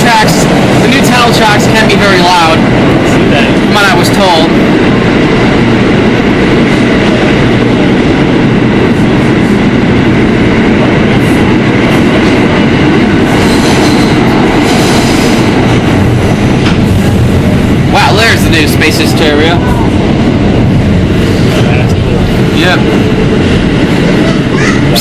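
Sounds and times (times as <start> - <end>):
subway wheels rumbling on rails: 0.0 - 25.0.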